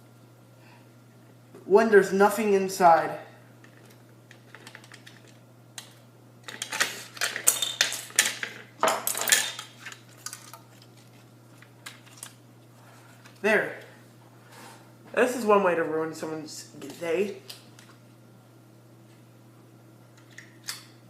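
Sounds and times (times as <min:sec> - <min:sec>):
plastic parts clicking and clattering: 0:03.7 - 0:10.6.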